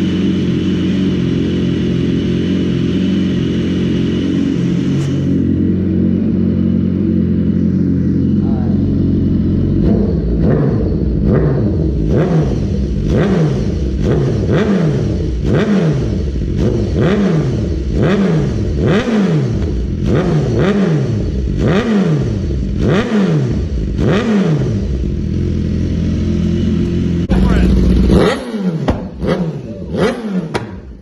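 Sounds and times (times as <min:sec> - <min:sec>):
motorcycle engine revving: 0:00.0 - 0:31.0.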